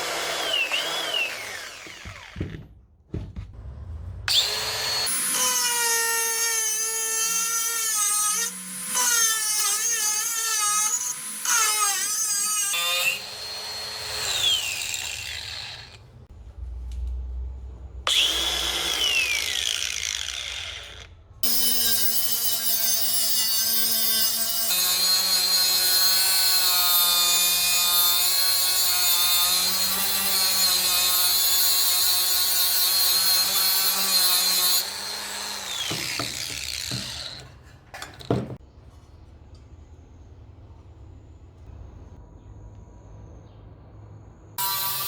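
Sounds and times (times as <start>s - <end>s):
angle grinder cutting: 0.0s - 2.6s, 4.3s - 16.0s, 18.1s - 37.6s, 44.6s - 45.0s.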